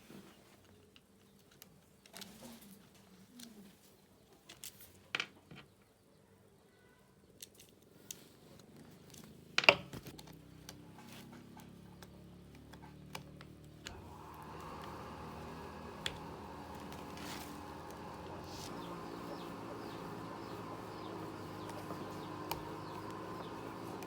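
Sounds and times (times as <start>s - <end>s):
engine parts clicking and knocking: 9.0s - 24.0s.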